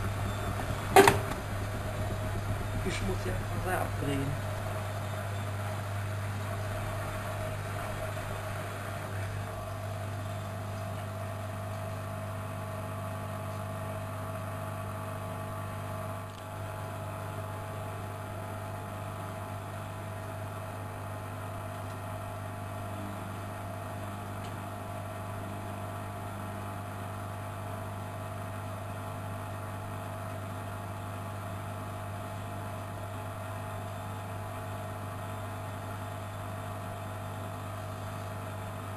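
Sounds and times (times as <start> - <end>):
steady whine: 0.0 - 22.4
washing machine motor hum: 0.0 - 38.9.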